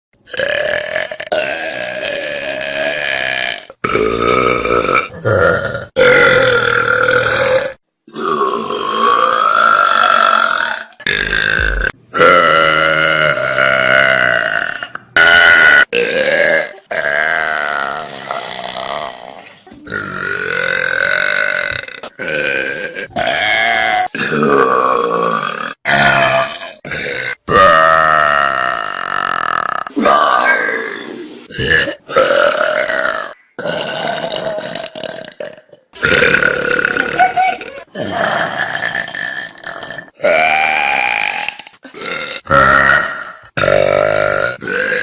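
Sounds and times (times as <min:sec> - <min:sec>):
long loud burps: 0:00.2 - 0:45.0.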